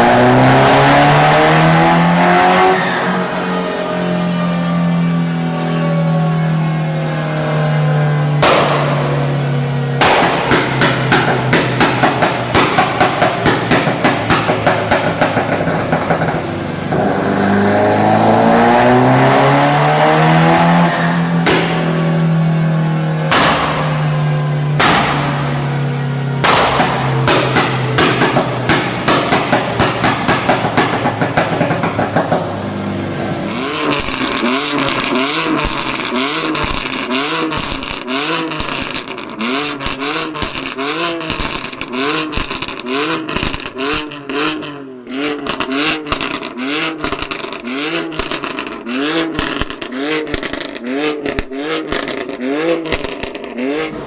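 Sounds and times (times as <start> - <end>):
car engine revving: 0.0 - 54.0
exhaust pops and crackles: 8.3 - 17.3, 20.6 - 32.9, 33.5 - 54.0.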